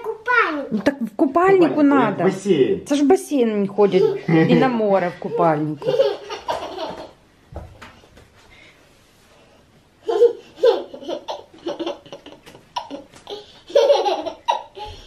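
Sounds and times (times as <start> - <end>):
girl laughing: 3.8 - 7.2, 10.0 - 15.0.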